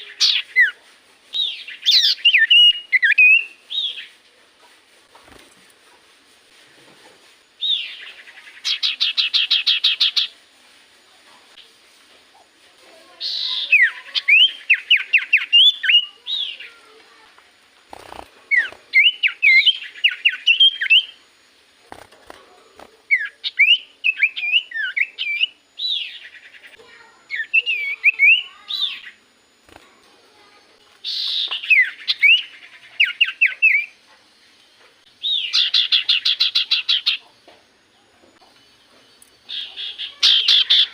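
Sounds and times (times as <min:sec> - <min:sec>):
bird chirps and whistles: 0:00.0 - 0:04.1, 0:13.2 - 0:16.7, 0:18.5 - 0:21.2, 0:23.1 - 0:26.7, 0:27.3 - 0:29.2, 0:31.1 - 0:34.0.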